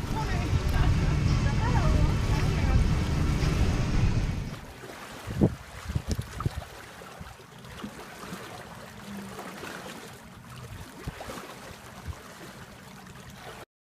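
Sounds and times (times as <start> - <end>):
water lapping against boat hull: 0.0 - 13.6.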